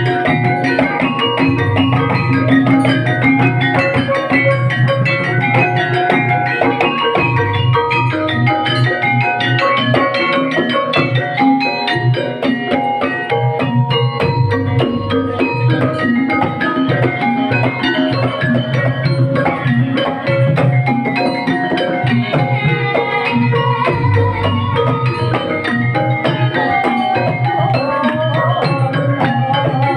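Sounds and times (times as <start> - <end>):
struck keyed instruments: 0.0 - 29.9.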